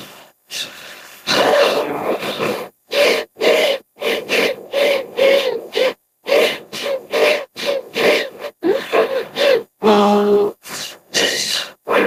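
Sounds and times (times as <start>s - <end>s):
creature grunting calls: 1.3s - 9.8s.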